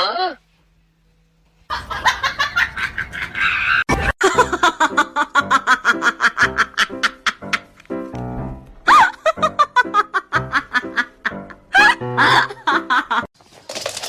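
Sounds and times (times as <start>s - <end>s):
person laughing: 1.7s - 7.8s, 8.8s - 13.3s.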